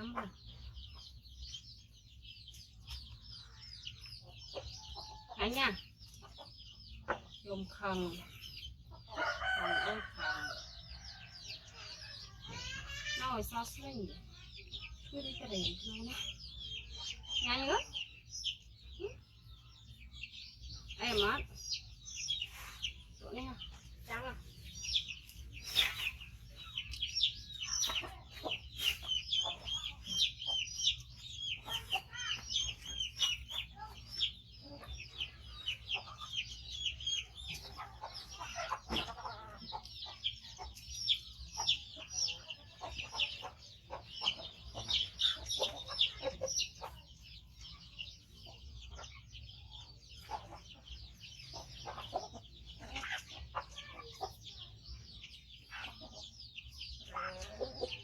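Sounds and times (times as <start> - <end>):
baby monkey chirping cries: 11.4 - 22.7, 50.2 - 58.0.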